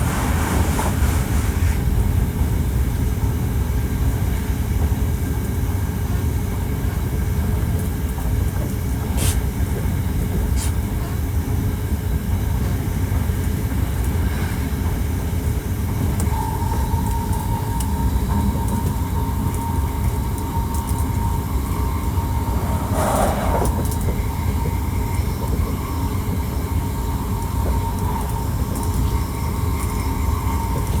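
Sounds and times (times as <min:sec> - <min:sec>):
brief hissing sweeps: 0:00.0 - 0:01.9, 0:22.1 - 0:24.0
train wheels rumbling on rail: 0:00.0 - 0:31.0.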